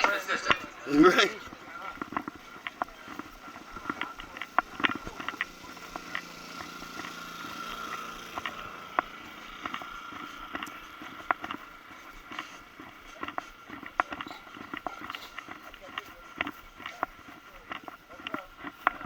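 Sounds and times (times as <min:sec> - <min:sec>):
gear clicking and knocking: 0:00.0 - 0:19.0.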